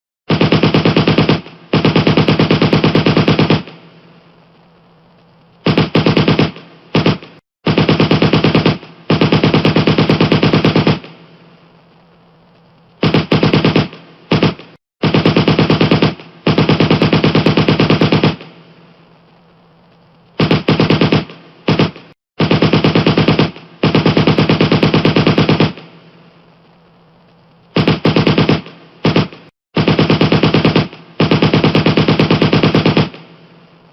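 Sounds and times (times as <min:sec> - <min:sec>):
automatic gunfire bursts: 0:00.3 - 0:03.8, 0:05.7 - 0:11.2, 0:13.0 - 0:18.5, 0:20.4 - 0:25.9, 0:27.8 - 0:33.3.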